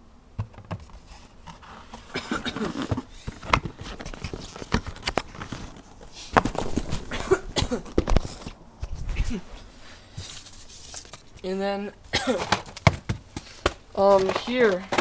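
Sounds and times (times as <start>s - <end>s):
cardboard boxes being handled: 0.4s - 9.4s, 12.4s - 15.0s.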